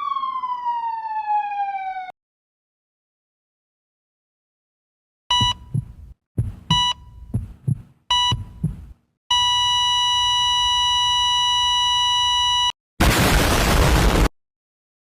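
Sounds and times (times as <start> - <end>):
thudding heartbeats: 5.3 - 9.0
heart monitor beeps: 5.3 - 12.7
heart monitor flatline tone: 5.3 - 12.7.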